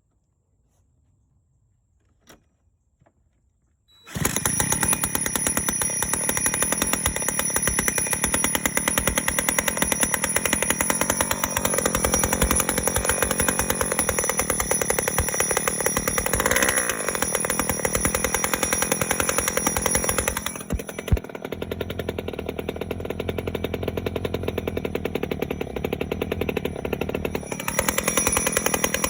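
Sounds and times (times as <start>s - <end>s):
two-stroke scooter engine buzzing: 4.1s - 29.0s.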